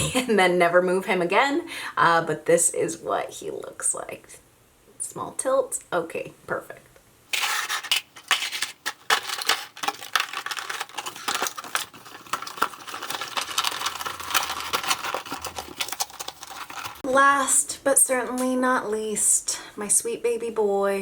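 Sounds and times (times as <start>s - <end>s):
plastic packaging clicks and crinkles: 7.3s - 17.0s.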